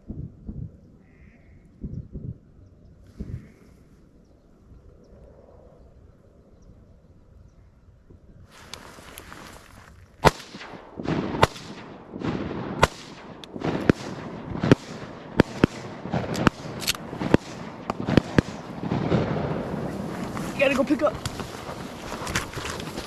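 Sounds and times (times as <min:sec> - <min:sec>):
shotguns firing: 0:10.2 - 0:21.8.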